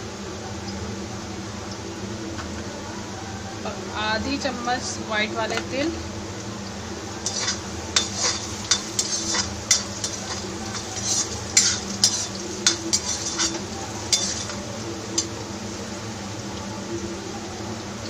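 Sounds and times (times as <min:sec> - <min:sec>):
food sizzling: 0:00.0 - 0:18.0
spoon scraping and clinking pan: 0:07.2 - 0:14.6.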